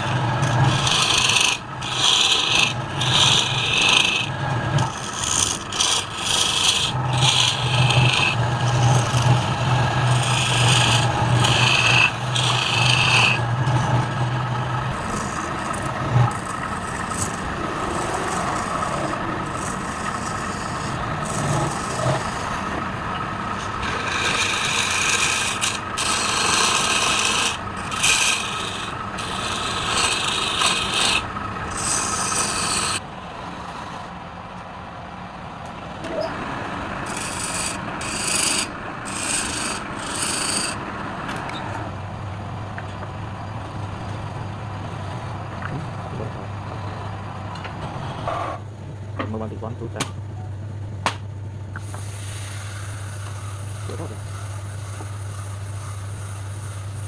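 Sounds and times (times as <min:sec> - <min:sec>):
tool cutting spinning wood: 0:00.0 - 0:34.0, 0:36.3 - 0:41.6, 0:51.8 - 0:57.0
wood lathe hum: 0:00.0 - 0:34.4, 0:36.3 - 0:48.7, 0:51.7 - 0:57.0.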